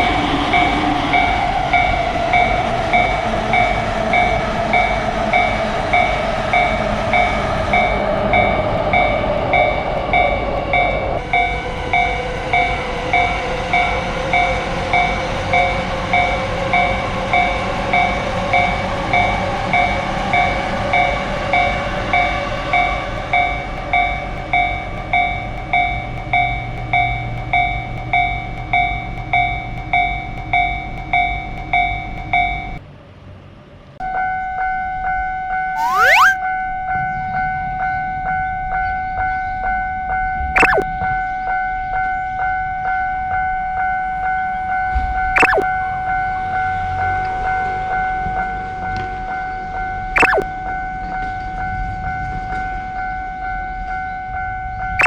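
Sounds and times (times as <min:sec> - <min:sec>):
rumble of passing train: 0:00.0 - 0:35.8, 0:36.6 - 0:40.5, 0:41.1 - 0:55.0.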